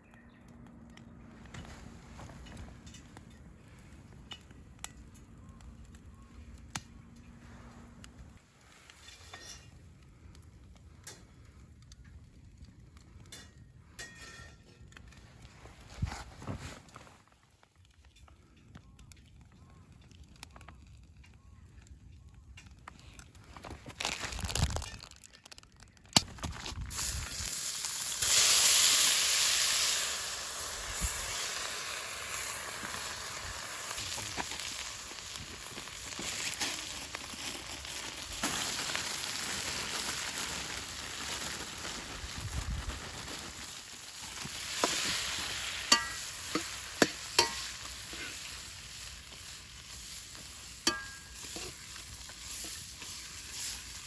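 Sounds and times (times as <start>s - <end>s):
food sizzling in a wok: 27.0s - 35.8s, 38.3s - 54.0s.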